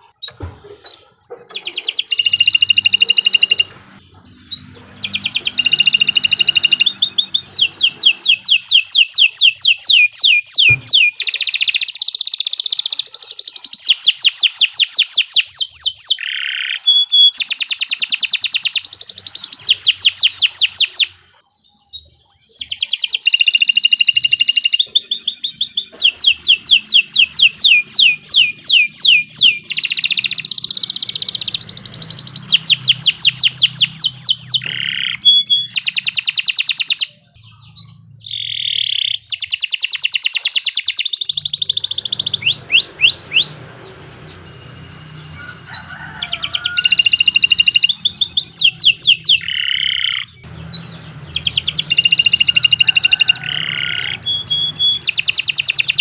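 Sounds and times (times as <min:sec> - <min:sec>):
canary singing trills: 0:00.0 - 0:56.0.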